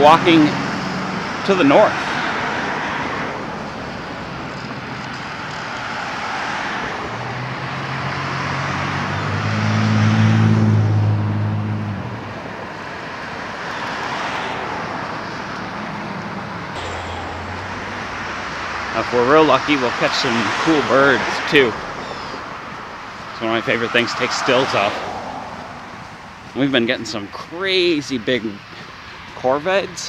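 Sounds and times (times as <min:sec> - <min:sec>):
vehicle engine hum passing: 0:00.0 - 0:29.6
rush of traffic tyres: 0:12.4 - 0:27.8.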